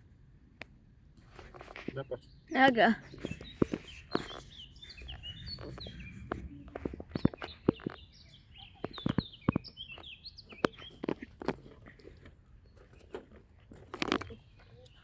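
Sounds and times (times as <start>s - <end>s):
small birds chirping: 1.3s - 15.0s
sharp clicks and knocks: 2.6s - 12.3s.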